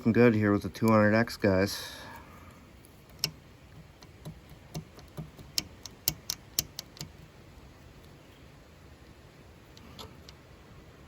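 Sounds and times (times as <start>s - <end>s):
tool clicks and taps on engine: 3.1s - 7.3s.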